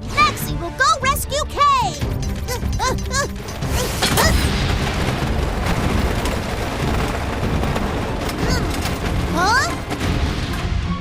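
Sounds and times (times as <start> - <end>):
cartoon background music: 0.0 - 5.5, 8.3 - 11.0
dense rumble: 4.4 - 10.6.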